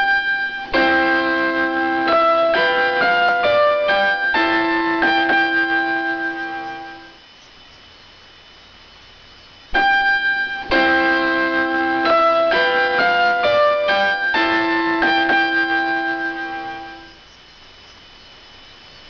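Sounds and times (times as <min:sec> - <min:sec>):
electric piano alert melody: 0:00.0 - 0:07.2, 0:09.7 - 0:17.2
faint hiss: 0:00.0 - 0:19.0.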